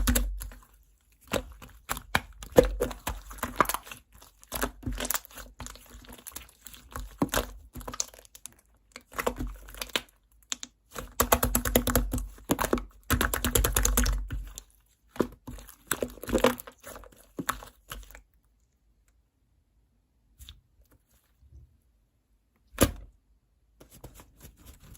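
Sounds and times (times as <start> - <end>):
slime crackling and squishing: 0.0 - 18.5.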